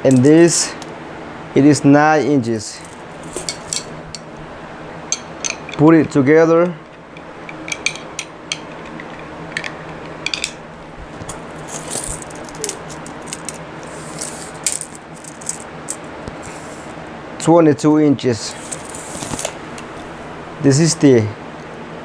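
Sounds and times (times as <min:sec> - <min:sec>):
steady low hum: 0:00.0 - 0:22.0
metal tool pieces clicking: 0:06.8 - 0:10.6, 0:11.7 - 0:16.1.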